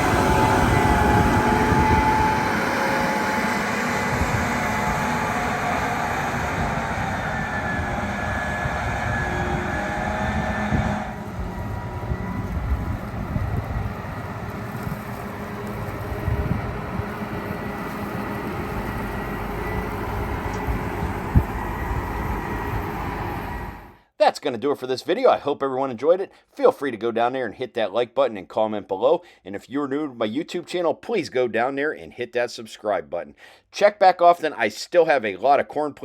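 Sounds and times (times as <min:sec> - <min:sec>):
combine harvester drone: 0:00.0 - 0:24.0.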